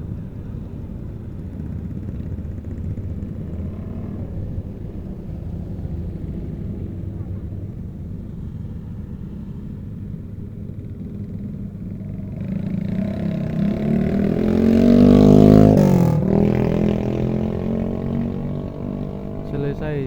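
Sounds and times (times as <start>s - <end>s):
combine harvester engine revving: 12.2s - 20.0s.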